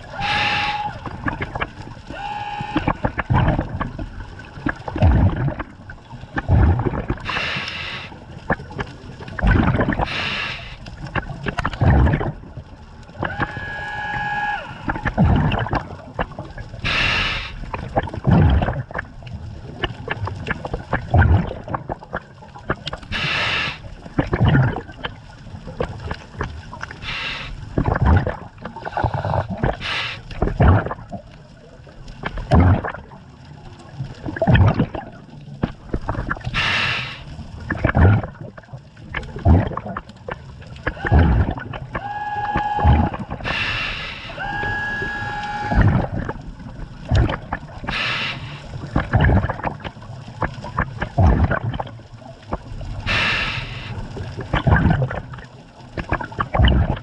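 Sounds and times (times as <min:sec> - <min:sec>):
exhaled bubbles gurgling: 0:00.0 - 0:57.0
regulator hiss on inhale: 0:00.2 - 0:01.0, 0:07.2 - 0:08.2, 0:10.0 - 0:11.0, 0:16.8 - 0:17.7, 0:23.1 - 0:23.9, 0:27.0 - 0:27.6, 0:28.8 - 0:30.4, 0:36.5 - 0:37.3, 0:43.4 - 0:44.4, 0:47.9 - 0:48.8, 0:53.0 - 0:54.1.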